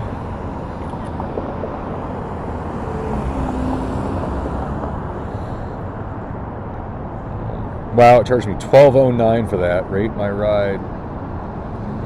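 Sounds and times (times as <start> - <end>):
vehicle passing by: 0.0 - 6.6
road traffic rushing: 0.0 - 12.0.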